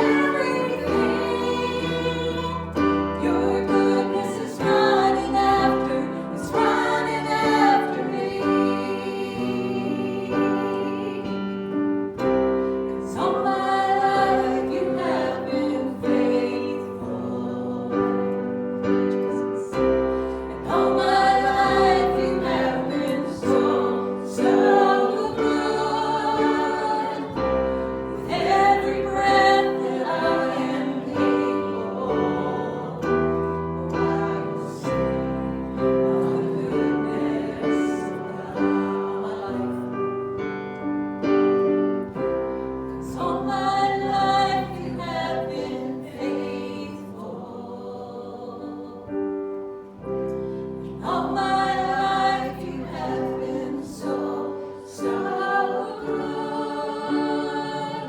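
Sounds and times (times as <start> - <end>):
group singing a hymn: 0.0 - 58.0
piano accompaniment: 0.0 - 58.0.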